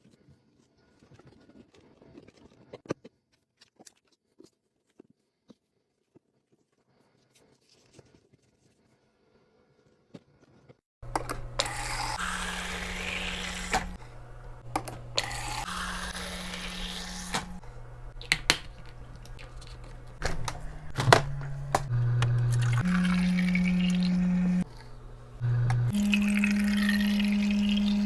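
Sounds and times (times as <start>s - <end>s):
liquid pouring into containers: 22.3s - 24.9s, 25.8s - 28.0s.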